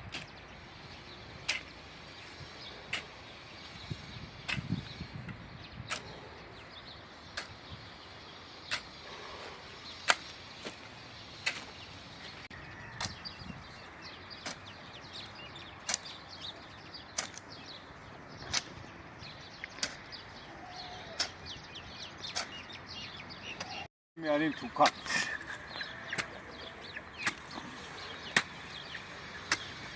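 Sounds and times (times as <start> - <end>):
digging tool striking ground: 0.0 - 0.4, 1.4 - 1.9, 4.4 - 6.2, 7.3 - 7.6, 8.7 - 9.0, 9.9 - 11.8, 13.0 - 13.2, 14.4 - 14.8, 15.8 - 16.2, 17.0 - 17.6, 18.4 - 18.9, 19.6 - 20.2, 21.1 - 21.4, 26.1 - 26.5, 27.2 - 29.9
small birds chirping: 0.0 - 29.9.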